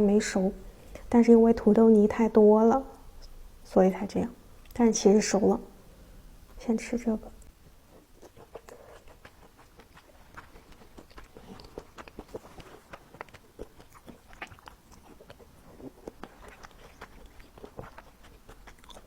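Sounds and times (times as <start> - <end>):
biting and chewing food: 7.8 - 19.0.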